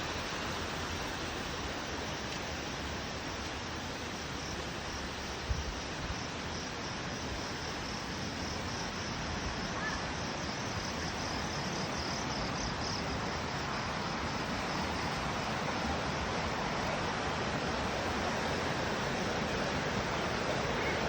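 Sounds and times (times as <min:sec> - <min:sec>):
water rushing over rocks: 0:13.4 - 0:21.0.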